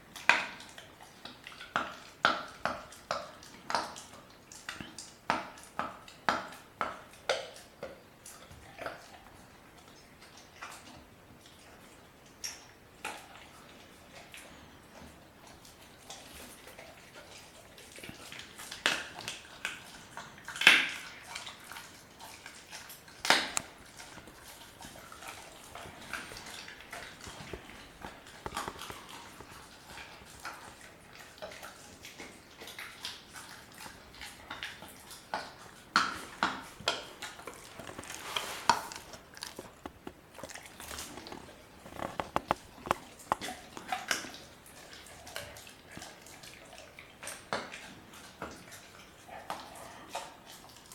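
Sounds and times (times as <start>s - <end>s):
wet chewing and smacking: 0.0s - 50.9s
dog crunching bone: 15.6s - 50.9s
bone cracking: 25.7s - 30.5s, 36.0s - 44.3s.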